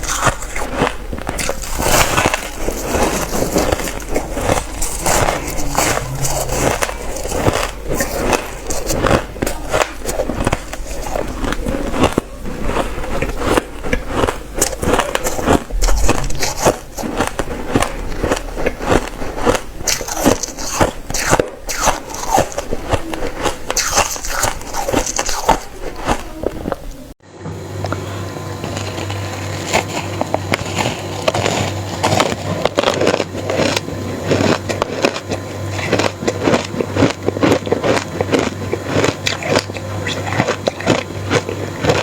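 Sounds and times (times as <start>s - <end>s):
person crunching ice: 0.0s - 26.8s.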